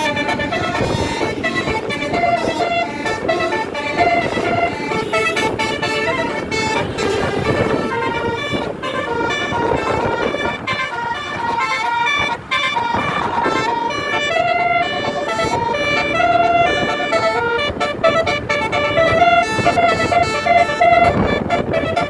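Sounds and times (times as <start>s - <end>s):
musical air horns: 0.0s - 22.0s
vehicle noise: 0.0s - 22.0s.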